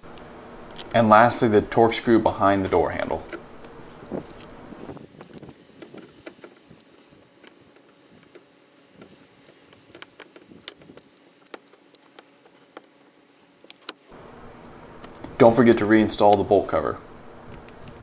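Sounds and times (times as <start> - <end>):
screwdriver clicks and taps: 5.2 - 13.0, 13.6 - 14.0.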